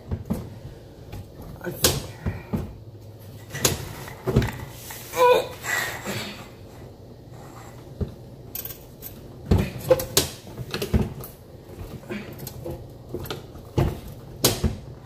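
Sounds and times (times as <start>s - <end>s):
dishwasher parts clanking: 3.4s - 4.9s, 8.0s - 15.0s.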